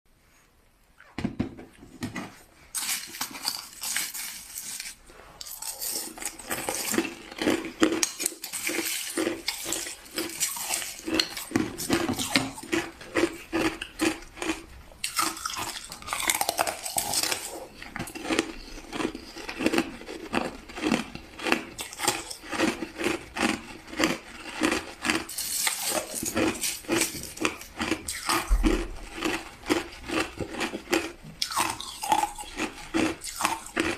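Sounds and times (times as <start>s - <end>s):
ice being chewed: 2.7s - 33.9s.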